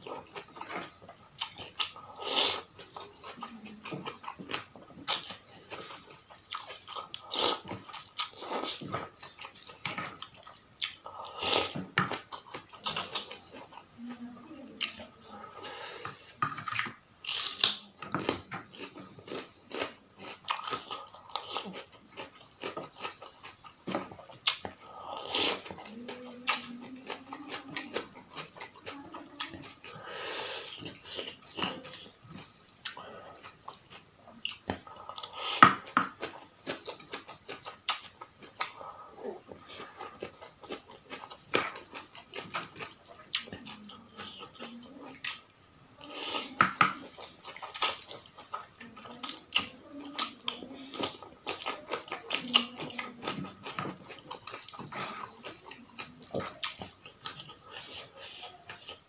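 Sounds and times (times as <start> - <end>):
chewing and biting noodles: 46.0 - 59.0.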